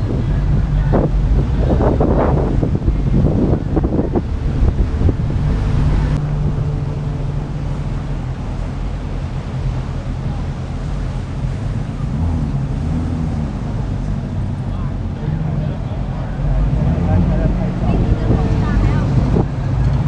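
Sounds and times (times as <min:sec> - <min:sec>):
car engine drone: 0:00.0 - 0:20.0
wind buffeting microphone: 0:00.0 - 0:20.0.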